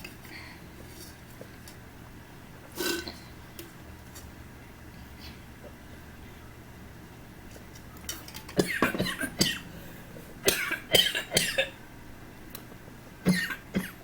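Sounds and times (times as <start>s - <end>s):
woman coughing: 8.6s - 9.7s, 10.4s - 11.8s, 13.3s - 14.0s.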